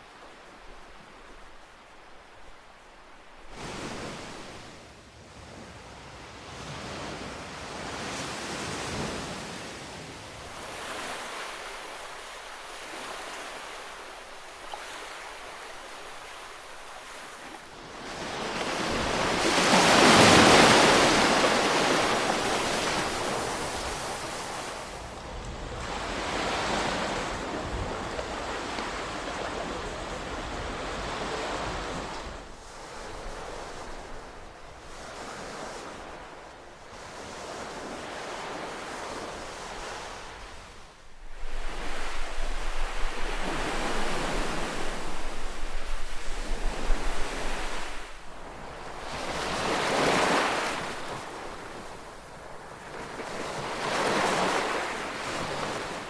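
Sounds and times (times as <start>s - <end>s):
ocean waves washing: 0.0s - 5.0s, 7.8s - 56.0s.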